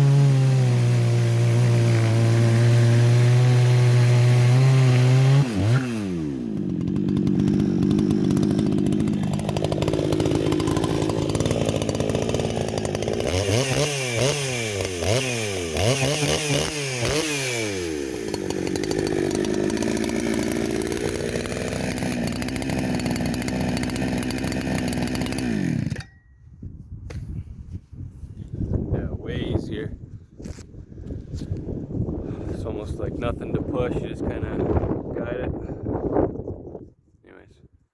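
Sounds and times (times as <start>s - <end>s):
chainsaw cutting under load: 0.0s - 26.2s.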